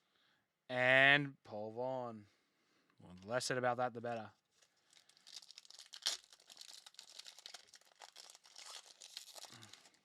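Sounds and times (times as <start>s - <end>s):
plastic packaging crinkling: 4.5s - 10.0s.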